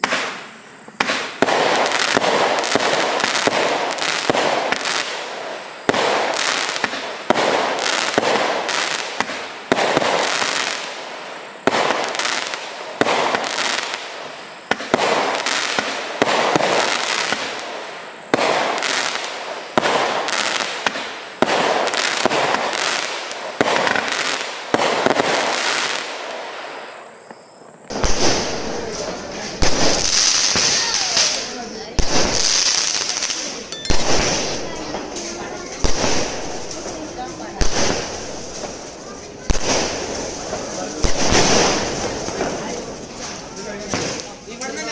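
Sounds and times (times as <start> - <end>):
firework bangs and crackle: 0.0 - 44.9.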